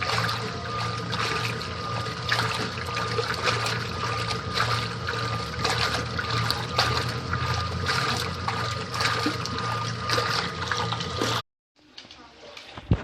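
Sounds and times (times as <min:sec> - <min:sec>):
washing machine motor hum: 0:00.0 - 0:13.0
water sloshing and splashing: 0:00.0 - 0:13.0.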